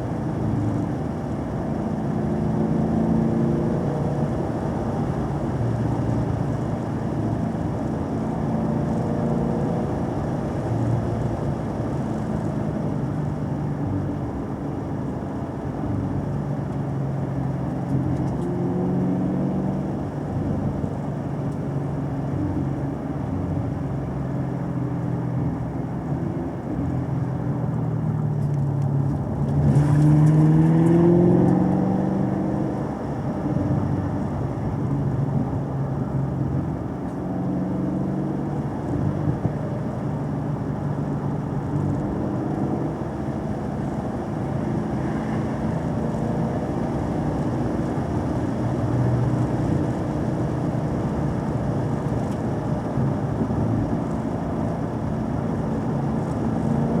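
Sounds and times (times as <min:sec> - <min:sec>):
car engine revving: 0:29.1 - 0:34.3.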